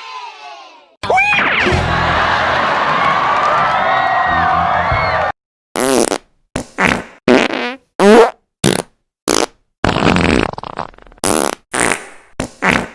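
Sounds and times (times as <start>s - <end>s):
fart sound effects: 5.8s - 12.9s.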